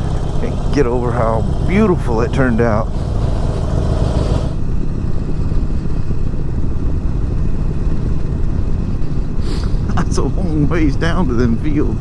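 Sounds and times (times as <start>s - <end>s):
motorcycle engine running: 0.0s - 12.0s
wind noise: 0.0s - 12.0s.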